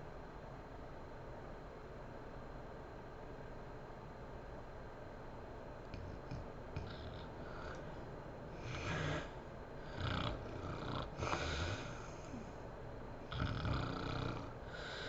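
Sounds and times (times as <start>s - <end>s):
woman snoring: 6.8s - 8.0s, 8.6s - 12.5s, 13.3s - 15.0s.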